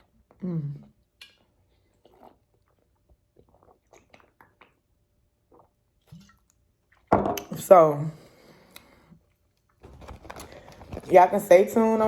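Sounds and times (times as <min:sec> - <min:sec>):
faint chewing: 0:00.0 - 0:04.8.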